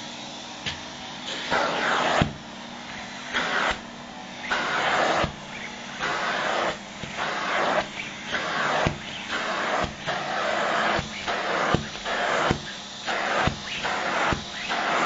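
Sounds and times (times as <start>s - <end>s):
vacuum cleaner airflow hissing: 0.0s - 15.0s.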